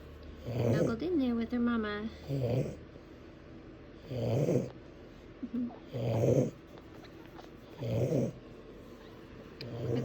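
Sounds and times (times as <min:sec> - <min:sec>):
dog snoring: 0:00.4 - 0:01.0, 0:02.2 - 0:02.9, 0:04.0 - 0:04.8, 0:05.8 - 0:06.6, 0:07.7 - 0:08.4, 0:09.6 - 0:10.0.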